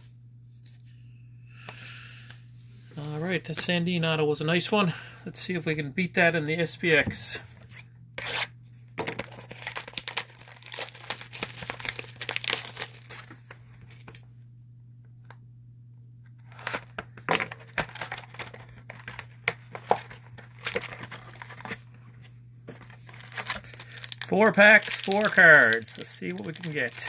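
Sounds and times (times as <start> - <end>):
foil wrapping crinkling and tearing: 9.1 - 14.2, 16.4 - 21.8, 22.7 - 27.0.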